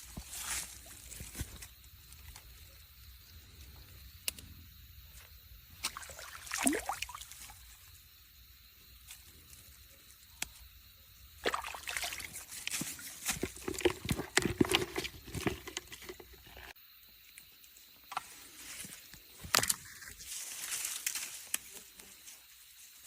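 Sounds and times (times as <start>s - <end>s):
water sloshing and splashing: 5.8s - 7.7s, 11.4s - 16.8s.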